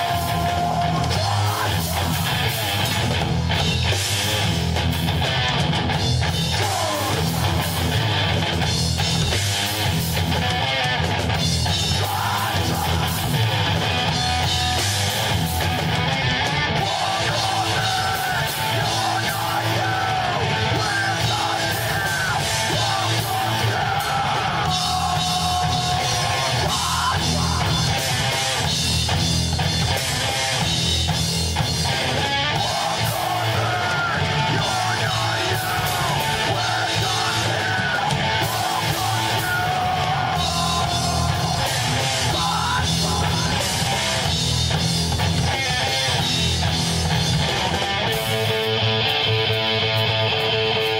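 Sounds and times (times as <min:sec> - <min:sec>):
person yelling vocals: 0:00.0 - 0:02.6, 0:06.5 - 0:08.0, 0:11.9 - 0:13.6, 0:16.8 - 0:28.2, 0:32.5 - 0:43.9
bass guitar: 0:00.0 - 0:50.9
distorted electric guitar: 0:00.0 - 0:50.9
drum kit: 0:00.0 - 0:50.9.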